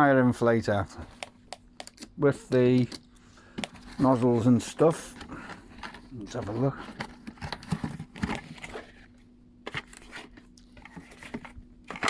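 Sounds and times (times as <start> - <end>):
packaging clicks: 1.2 - 3.0
packaging rustling and crinkling: 3.6 - 12.0.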